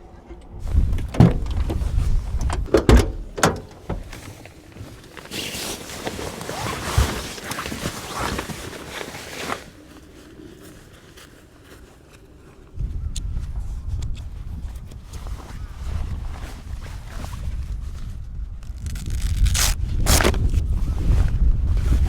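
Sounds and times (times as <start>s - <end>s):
rustling or scraping: 0.2s - 12.5s, 15.2s - 22.0s
sharp knocks and thuds: 0.6s - 4.3s.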